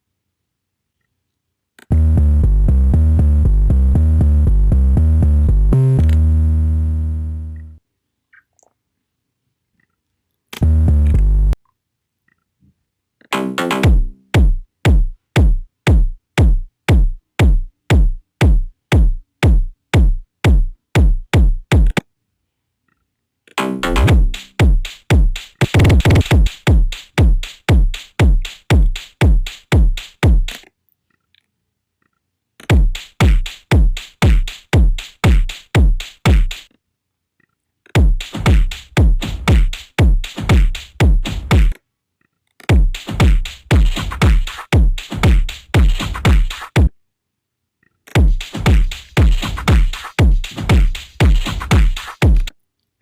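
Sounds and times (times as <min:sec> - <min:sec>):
bright electronic percussion: 0:13.3 - 0:22.0, 0:23.6 - 0:30.6, 0:32.6 - 0:36.7, 0:38.0 - 0:41.8, 0:42.7 - 0:46.9, 0:48.2 - 0:52.5
heavy bass drum hits: 0:38.0 - 0:41.7, 0:48.2 - 0:52.4.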